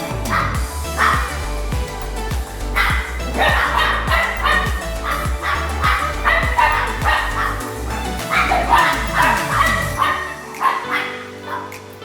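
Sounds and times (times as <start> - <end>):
background music with steady beat: 0.0 - 12.0
dog barking and yipping: 2.8 - 11.7.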